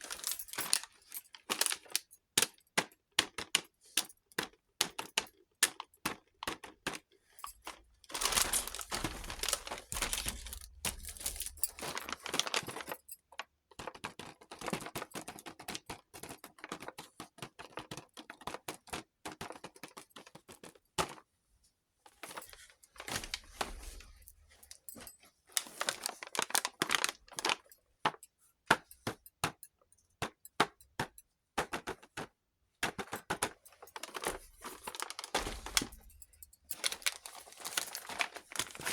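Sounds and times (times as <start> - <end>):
plastic pieces rustling: 0.0 - 2.0, 7.5 - 13.0, 22.3 - 27.7, 33.0 - 38.9.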